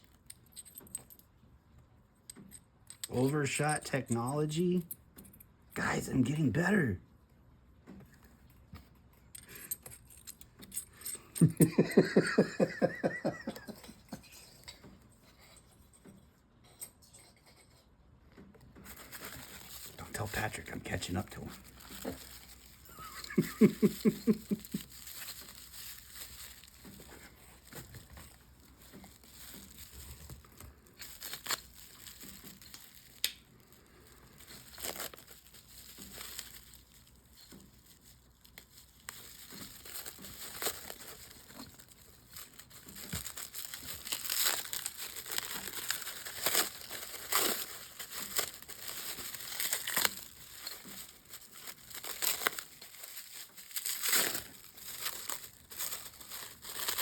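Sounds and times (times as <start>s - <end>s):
packing material crinkling: 9.4s - 13.8s, 18.8s - 57.0s.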